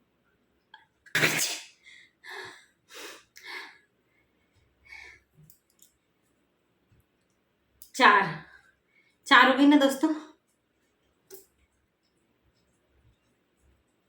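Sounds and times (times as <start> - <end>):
woman sneezing: 1.1 - 1.8
quiet breaths: 1.8 - 7.5, 8.4 - 9.3.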